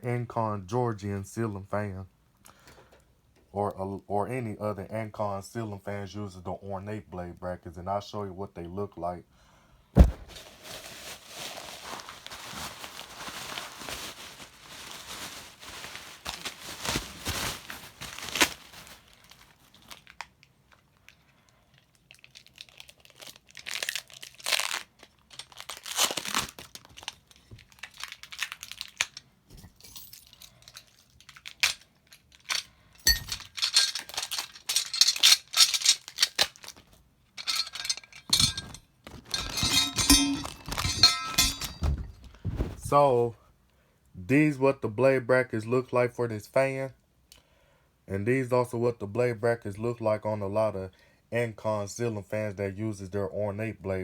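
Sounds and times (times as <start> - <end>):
packing material crinkling: 10.0 - 29.2, 30.2 - 43.1.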